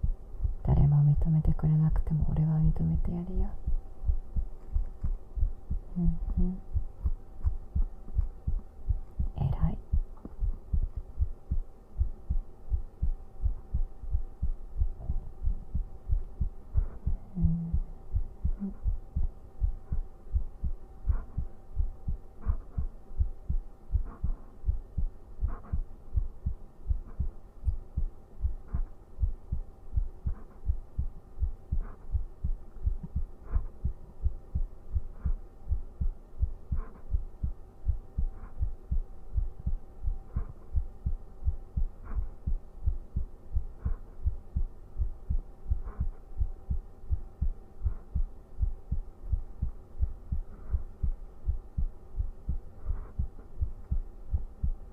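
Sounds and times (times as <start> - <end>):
faint hum: 0.0 - 54.9
heartbeat thumps: 0.0 - 54.9.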